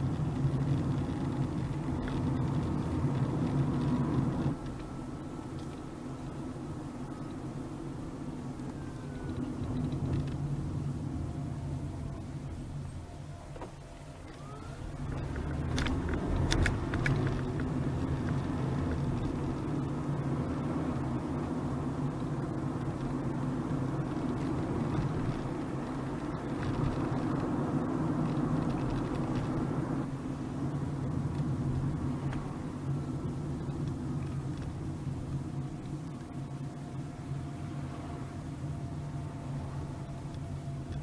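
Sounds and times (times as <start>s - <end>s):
engine and road noise hum: 0.0s - 41.0s.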